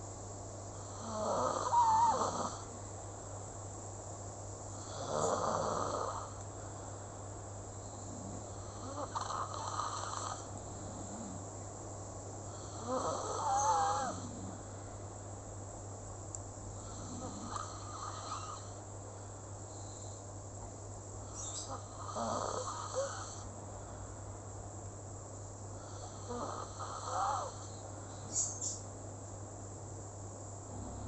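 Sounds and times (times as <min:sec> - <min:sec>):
steady low hum: 0:00.0 - 0:31.0
slow snoring with whistle: 0:00.9 - 0:02.7, 0:04.8 - 0:06.3, 0:08.0 - 0:11.4, 0:12.6 - 0:14.6, 0:16.8 - 0:18.7, 0:21.3 - 0:23.5, 0:25.8 - 0:27.8.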